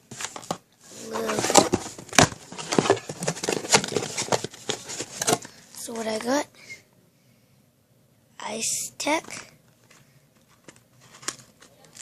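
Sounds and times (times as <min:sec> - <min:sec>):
packaging crinkling and rustling: 0:00.1 - 0:06.3, 0:09.2 - 0:12.0.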